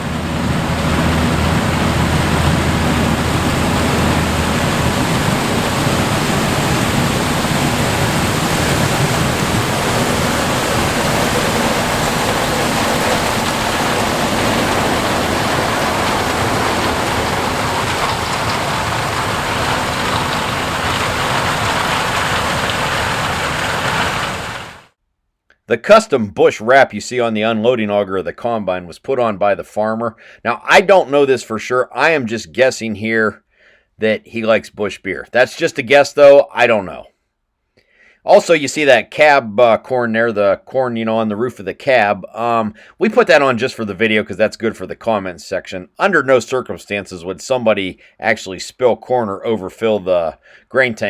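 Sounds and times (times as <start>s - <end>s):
combine harvester rushing noise: 0.0s - 24.9s
low engine drone: 0.0s - 24.9s.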